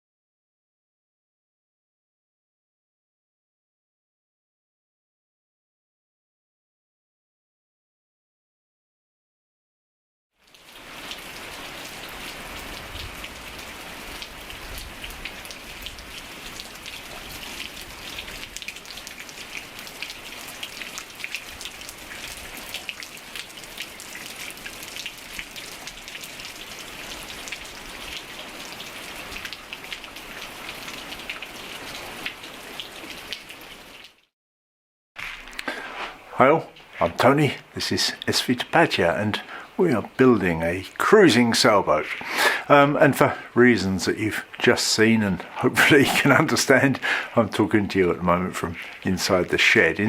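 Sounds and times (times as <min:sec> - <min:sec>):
steady rain falling: 0:10.4 - 0:34.3, 0:35.2 - 0:50.0.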